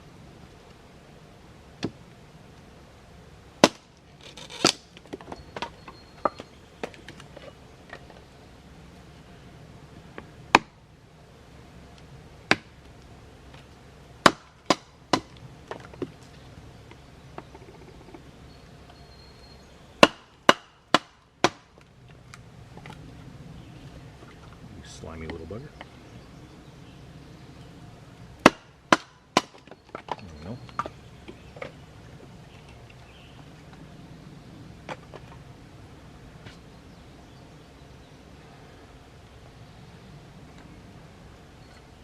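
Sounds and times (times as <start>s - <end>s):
blade chopping wood: 3.6s - 5.2s, 10.5s - 10.7s, 12.5s - 12.7s, 14.2s - 16.1s, 20.0s - 21.8s, 28.4s - 30.2s.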